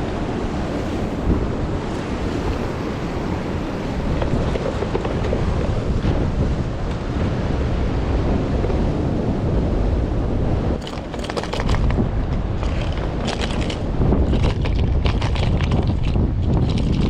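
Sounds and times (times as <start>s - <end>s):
wind buffeting microphone: 0.0s - 17.0s.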